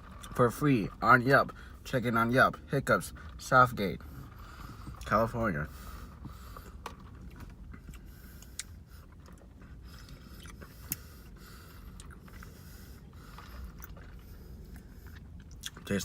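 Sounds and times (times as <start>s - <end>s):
low room hum: 0.0s - 16.0s
sipping and chewing: 5.7s - 16.0s.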